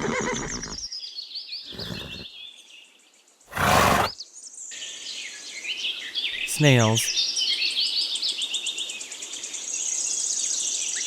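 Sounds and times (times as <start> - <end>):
faint birds chirping: 1.7 - 2.2, 3.5 - 4.1
pony breathy snorts: 1.7 - 2.2, 3.5 - 4.1.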